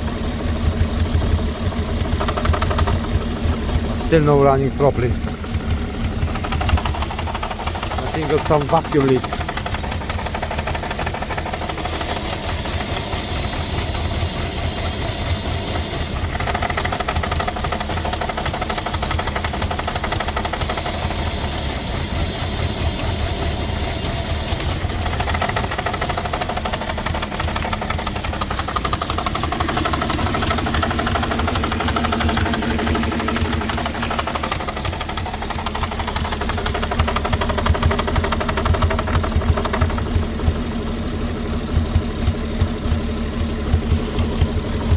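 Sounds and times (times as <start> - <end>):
car engine idling unevenly: 0.0 - 44.9
thin high whine: 11.6 - 16.2.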